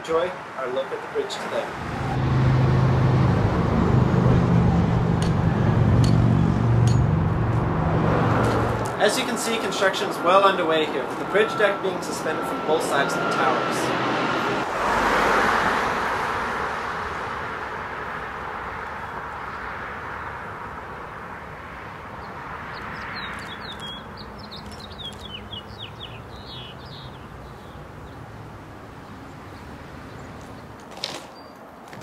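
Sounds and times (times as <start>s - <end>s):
passing vehicle: 1.3s - 30.8s
bird chirping: 22.2s - 28.3s.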